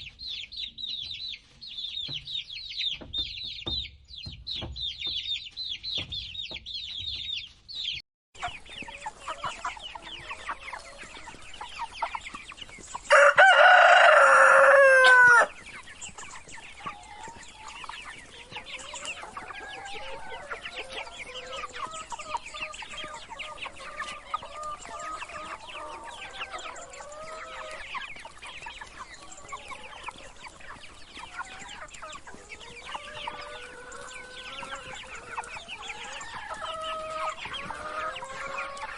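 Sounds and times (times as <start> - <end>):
chickens clucking: 0.0 - 38.9
chicks peeping: 0.0 - 38.9
rooster crowing: 13.1 - 15.6.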